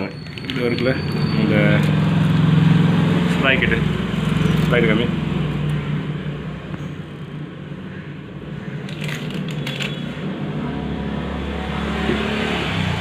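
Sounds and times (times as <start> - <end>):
small metal parts clinking: 8.9 - 10.0.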